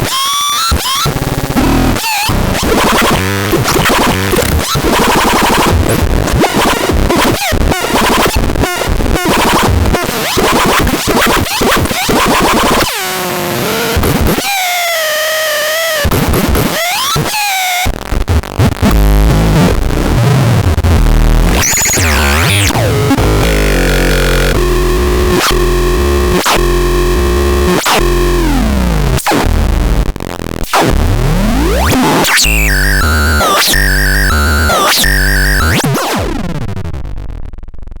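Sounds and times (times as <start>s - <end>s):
harsh chaotic synth noise: 0.7s - 14.4s, 15.7s - 38.0s
low bass pulses: 18.8s - 35.7s.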